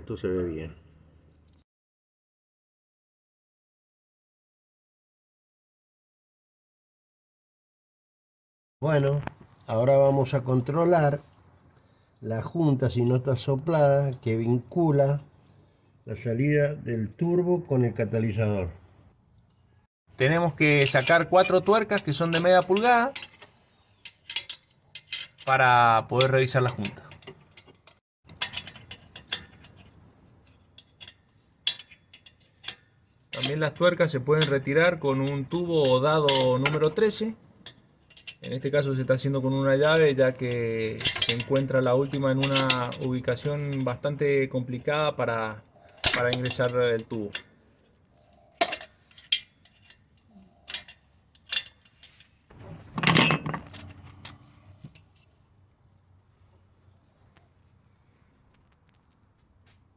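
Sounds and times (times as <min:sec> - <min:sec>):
wrench clicking on metal nuts: 0:22.0 - 0:25.6, 0:26.2 - 0:36.9, 0:37.6 - 0:38.6, 0:39.9 - 0:43.9, 0:46.0 - 0:47.5, 0:50.6 - 0:52.3.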